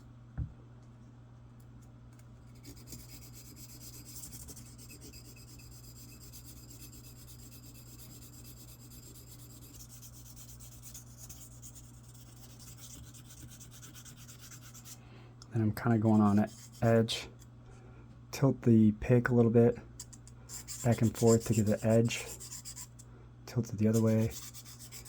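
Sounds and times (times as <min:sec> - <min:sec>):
sandpaper rubbing on metal: 0:02.6 - 0:15.0, 0:20.5 - 0:22.9, 0:23.8 - 0:25.0.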